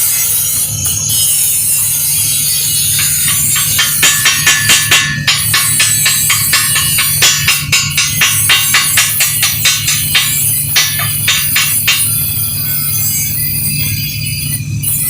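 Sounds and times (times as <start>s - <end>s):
steady low hum: 1.9s - 13.3s
hammer tapping on metal: 3.0s - 12.3s.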